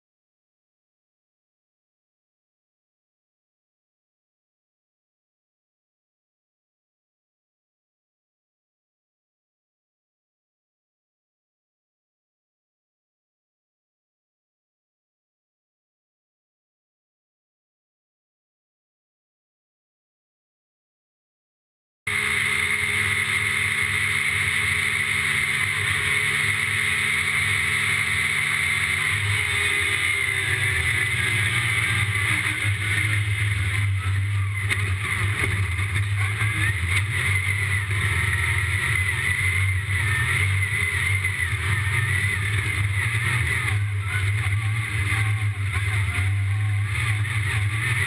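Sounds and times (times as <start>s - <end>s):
vehicle engine droning: 22.1s - 48.0s.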